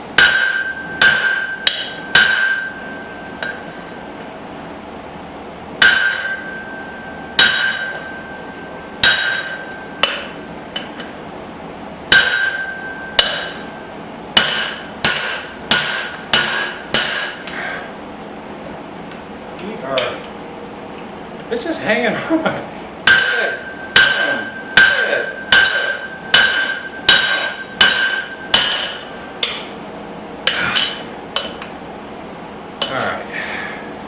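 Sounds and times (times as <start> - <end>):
hammer striking steel on anvil: 0.0 - 4.3, 5.8 - 11.2, 12.1 - 17.6, 23.0 - 29.8, 30.4 - 31.7.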